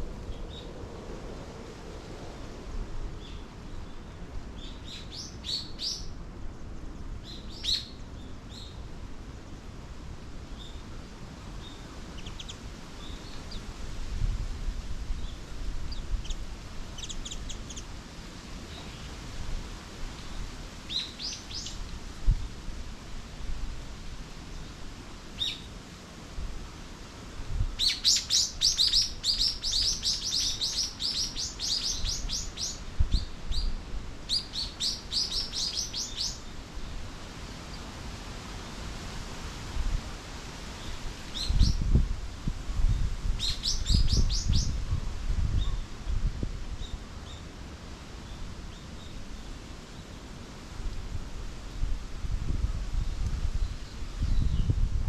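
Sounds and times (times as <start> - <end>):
wind rumble on microphone: 0.0 - 49.6, 50.5 - 55.0
songbirds chirping: 3.1 - 13.8, 20.2 - 21.9, 27.8 - 38.0.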